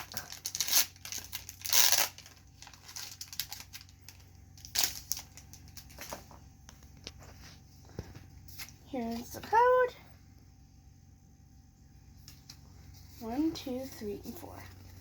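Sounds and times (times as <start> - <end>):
foil pack tearing and crinkling: 0.0 - 6.3.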